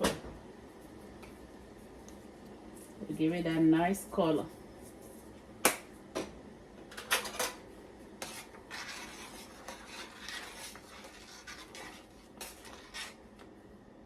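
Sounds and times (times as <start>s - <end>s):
rubbing and scraping: 8.2s - 13.2s.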